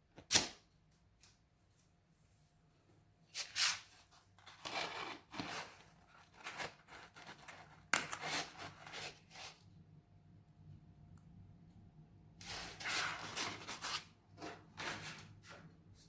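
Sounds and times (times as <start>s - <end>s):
paper tearing and crinkling: 3.4s - 9.3s.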